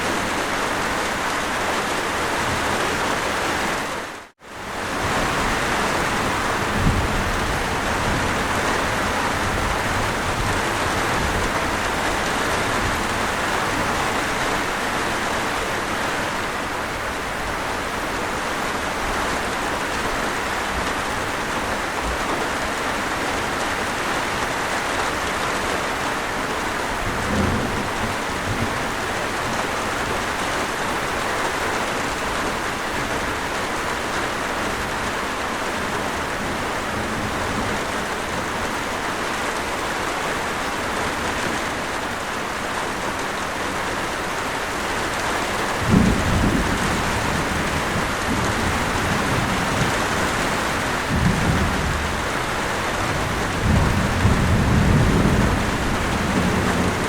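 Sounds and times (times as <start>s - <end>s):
steady rain falling: 0.0s - 57.0s
low rumble of thunder: 4.9s - 14.3s, 26.9s - 29.2s, 45.7s - 57.0s.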